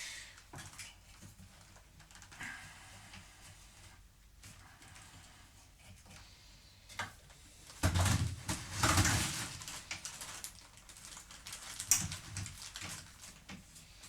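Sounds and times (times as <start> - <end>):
objects scraping and clattering: 7.9 - 10.5.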